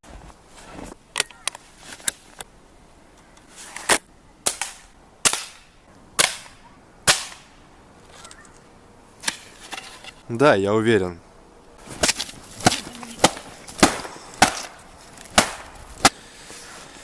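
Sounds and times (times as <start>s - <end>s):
air rifle shots: 13.2s - 14.8s.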